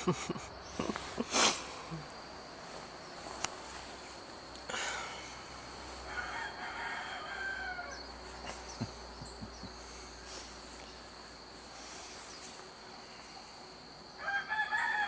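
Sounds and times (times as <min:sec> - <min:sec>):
high insect trill: 0:00.0 - 0:15.0
rooster crowing: 0:06.0 - 0:08.7, 0:14.2 - 0:15.0.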